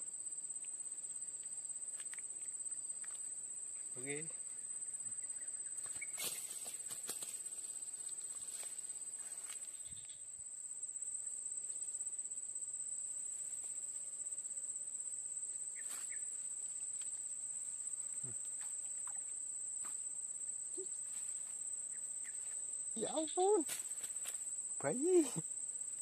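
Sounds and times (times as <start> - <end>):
insect trilling: 2.0 - 10.4, 15.6 - 26.0.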